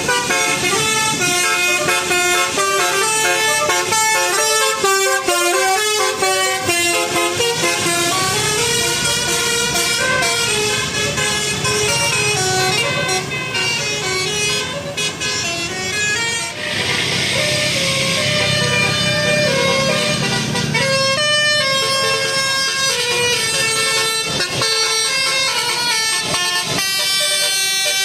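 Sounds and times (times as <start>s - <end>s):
bus musical horn melody: 0.0s - 28.0s
rushing hiss: 0.3s - 8.6s, 16.5s - 20.2s.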